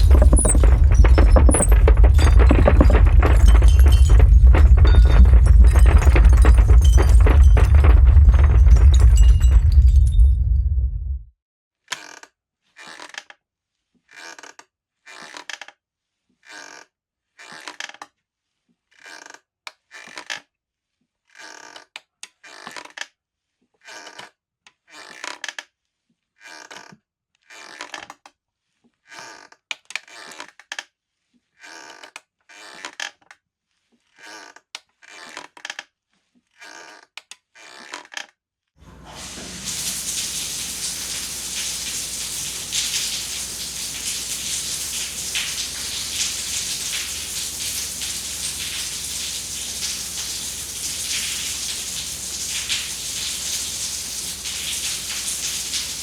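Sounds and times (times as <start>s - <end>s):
steady hiss: 38.8s - 56.0s.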